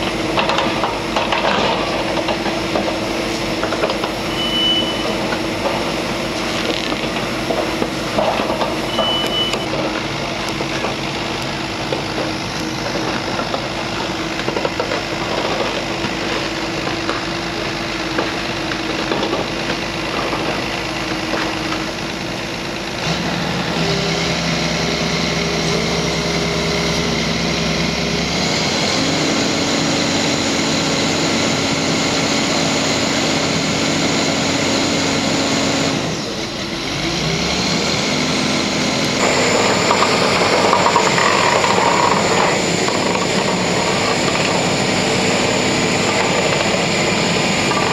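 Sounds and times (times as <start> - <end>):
diesel engine running: 0.0 - 47.9
machine clanks and rattles: 0.3 - 3.0
short high beep: 4.3 - 5.3, 8.9 - 9.8.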